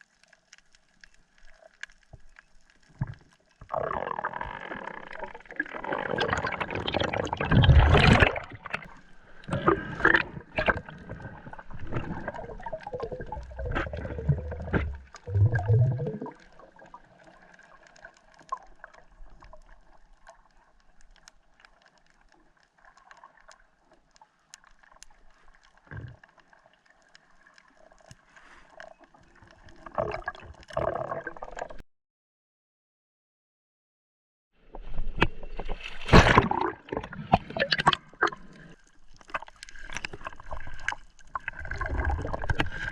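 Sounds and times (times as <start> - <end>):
water gurgling and splashing: 0.9 - 23.9, 28.7 - 31.8, 34.8 - 42.9.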